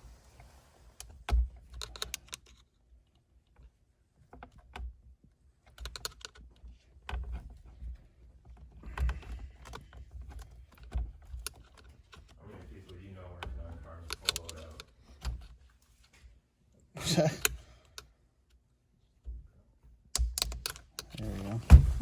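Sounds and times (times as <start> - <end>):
plastic parts clicking and rattling: 1.0 - 5.0, 5.6 - 16.2, 20.2 - 22.0.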